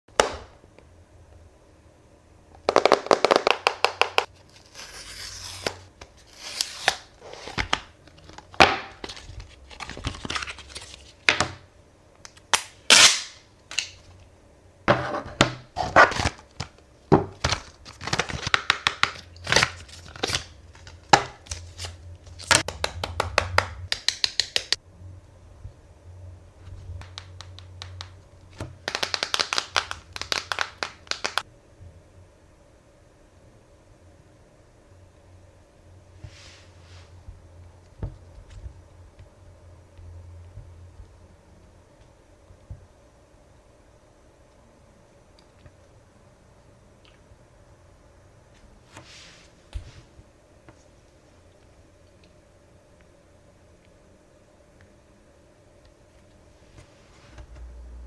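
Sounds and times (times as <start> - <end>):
plastic and cardboard crinkling: 2.7 - 11.3, 28.8 - 31.4.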